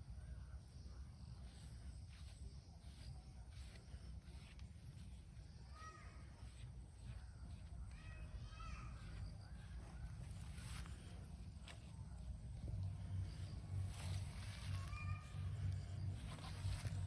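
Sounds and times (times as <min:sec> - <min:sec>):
steady low rumble: 0:09.2 - 0:17.0.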